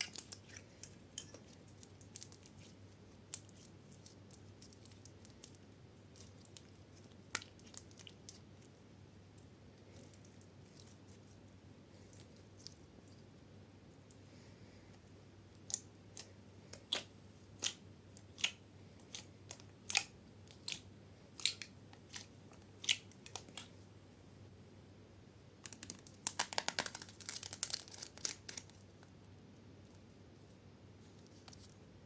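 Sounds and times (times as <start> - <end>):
slime clicking and popping: 25.6 - 28.6.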